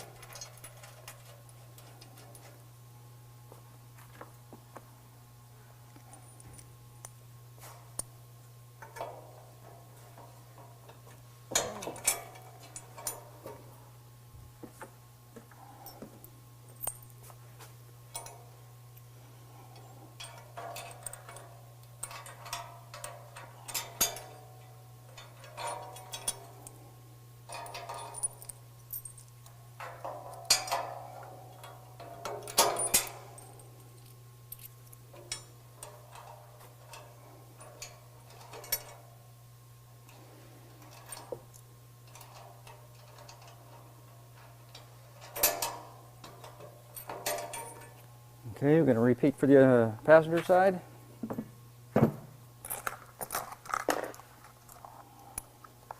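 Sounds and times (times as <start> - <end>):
metal tools clinking: 0.0 - 2.5, 11.5 - 13.6, 19.6 - 26.9, 27.5 - 39.0, 40.8 - 48.1
steady low hum: 0.0 - 55.9.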